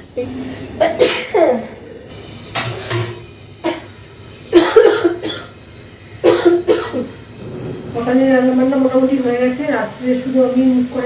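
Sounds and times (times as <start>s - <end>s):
person sneezing: 0.8s - 1.6s.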